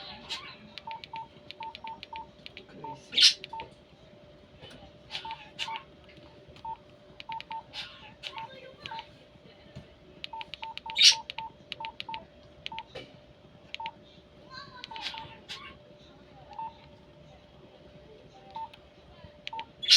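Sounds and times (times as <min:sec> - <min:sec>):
faint steady hum: 0:00.0 - 0:19.9
electronic key beeps: 0:00.8 - 0:03.7, 0:06.6 - 0:07.7, 0:10.3 - 0:12.9.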